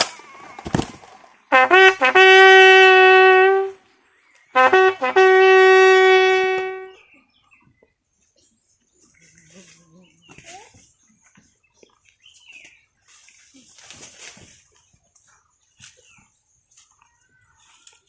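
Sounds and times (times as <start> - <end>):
short sharp crack: 0.0 - 1.3
bugle call: 1.5 - 3.8, 4.5 - 7.0.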